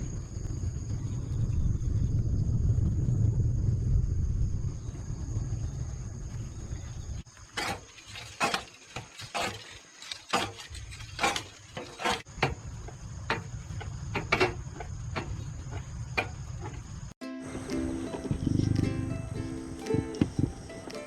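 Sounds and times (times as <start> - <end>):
sharp scraping strokes: 7.4 - 12.3.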